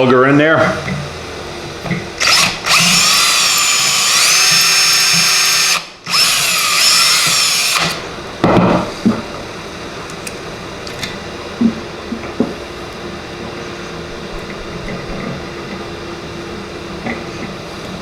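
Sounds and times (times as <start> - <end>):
electric drill drilling steel: 2.2 - 8.0.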